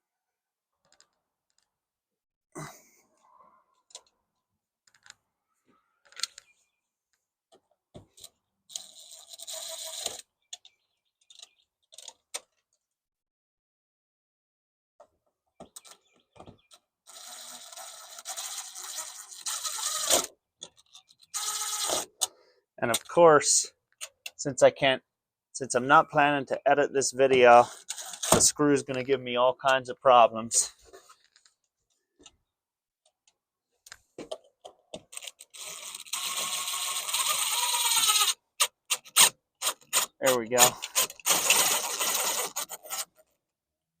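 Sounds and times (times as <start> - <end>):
screw clicking and scraping: 8.2 - 12.5, 17.0 - 22.3, 27.7 - 28.4, 35.0 - 43.2
screw grinding into wall: 17.0 - 20.3, 21.3 - 22.3, 27.7 - 28.4, 35.1 - 43.2.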